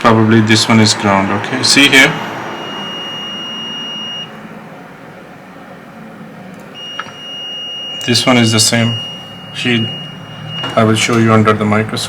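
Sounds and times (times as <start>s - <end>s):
multimeter continuity beep: 2.6s - 4.4s, 6.8s - 11.2s.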